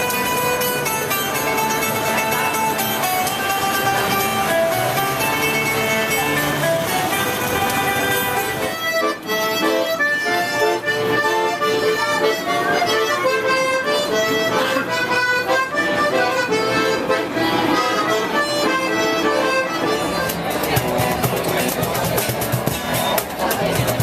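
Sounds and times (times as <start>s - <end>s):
melody of sustained notes: 0.0s - 9.0s.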